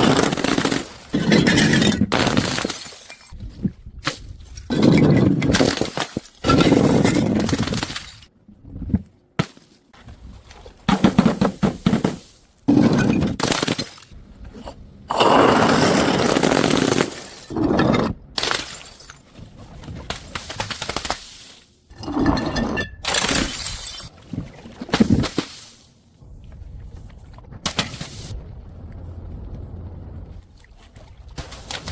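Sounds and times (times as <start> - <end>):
breaking and crushing sounds: 0.0 - 8.3, 15.5 - 25.7.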